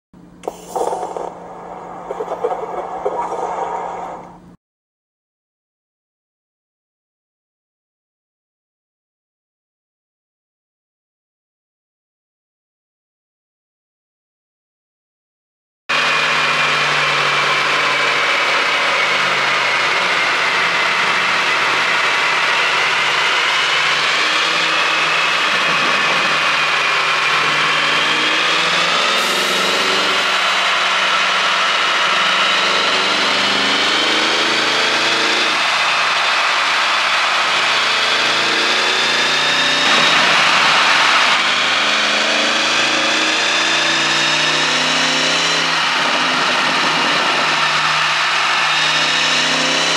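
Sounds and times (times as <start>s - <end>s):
car engine idling: 16.0s - 34.7s.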